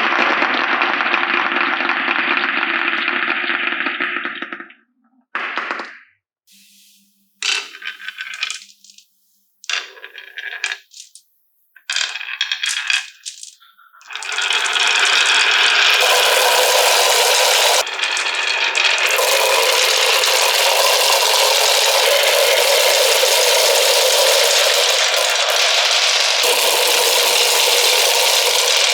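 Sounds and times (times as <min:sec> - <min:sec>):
marbles rattling along a run: 0:07.4 - 0:11.2, 0:11.9 - 0:28.9.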